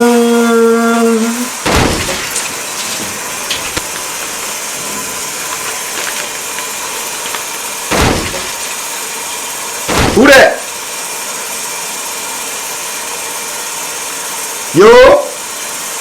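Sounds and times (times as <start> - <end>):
shower water spraying: 1.0 - 14.5
heavy thump: 1.6 - 5.0, 7.9 - 8.9, 9.9 - 10.5.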